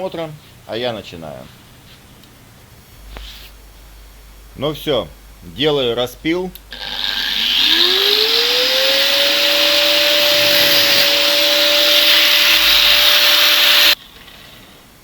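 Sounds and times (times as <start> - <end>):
electric cutting tool whine: 6.7 - 14.0
metal cutting hiss: 6.7 - 14.0.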